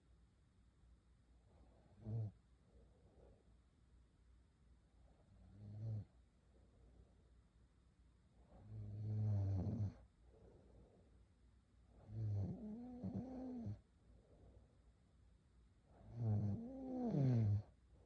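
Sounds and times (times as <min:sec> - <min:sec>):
girl snoring: 0:12.1 - 0:13.8, 0:16.1 - 0:17.7.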